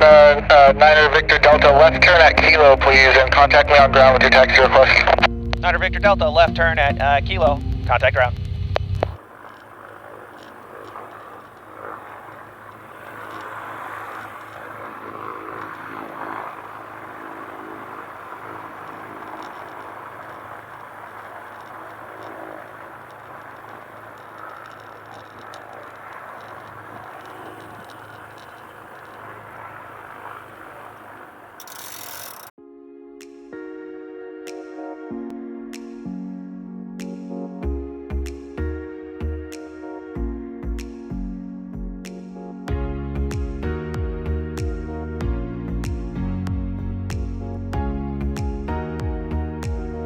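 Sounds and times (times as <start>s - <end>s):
twin piston engines droning: 0.0s - 32.5s.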